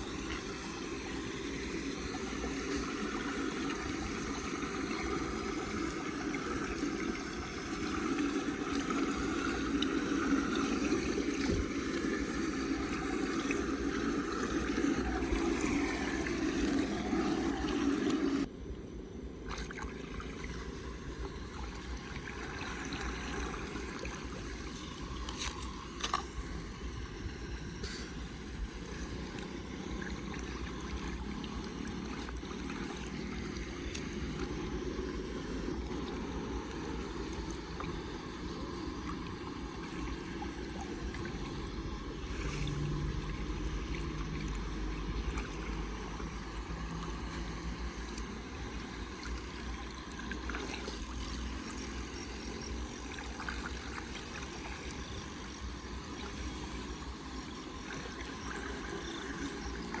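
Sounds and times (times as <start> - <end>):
floodwater rushing: 0.0 - 18.5.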